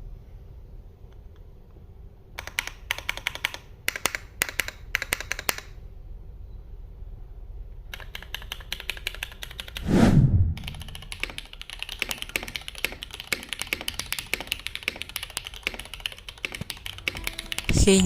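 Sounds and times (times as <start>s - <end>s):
mechanical keyboard typing: 2.4s - 5.8s, 7.9s - 9.8s, 10.6s - 18.0s.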